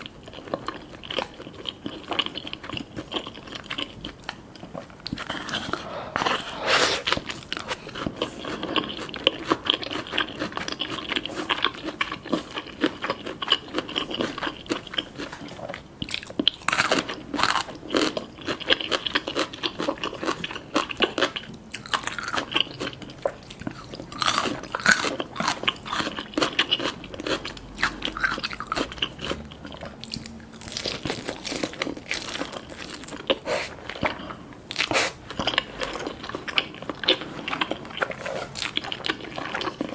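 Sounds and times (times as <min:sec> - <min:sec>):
crunchy food chewing: 0:00.0 - 0:39.9.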